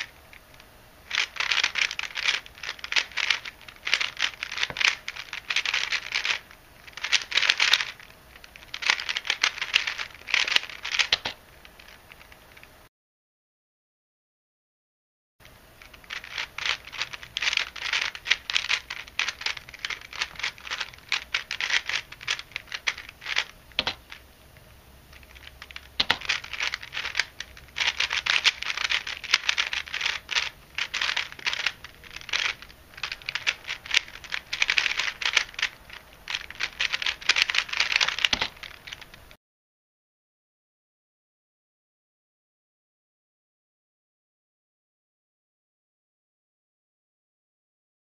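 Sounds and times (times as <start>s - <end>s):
speed cube plastic clicking: 0.0s - 12.3s, 15.8s - 24.2s, 25.1s - 39.3s.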